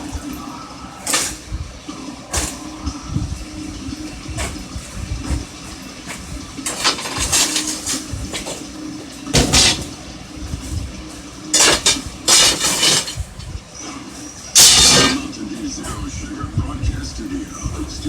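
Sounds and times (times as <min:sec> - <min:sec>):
steady low hum: 0:00.0 - 0:18.0
metal clanking and scraping: 0:01.0 - 0:01.6, 0:02.3 - 0:02.8, 0:04.0 - 0:13.6, 0:14.5 - 0:16.0.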